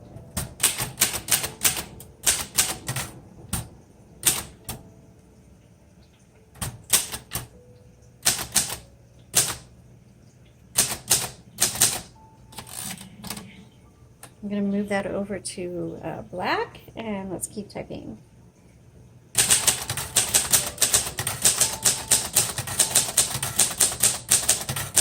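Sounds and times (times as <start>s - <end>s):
typewriter keys clacking: 0.4s - 4.8s, 6.6s - 7.5s, 8.2s - 8.8s, 9.4s - 9.7s, 10.8s - 13.6s, 19.4s - 25.0s.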